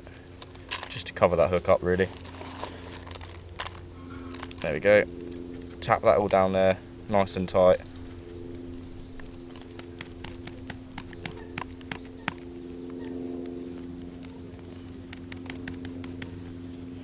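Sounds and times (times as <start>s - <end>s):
steady low hum: 0.0s - 17.0s
quick light taps: 9.2s - 12.5s, 15.0s - 16.5s.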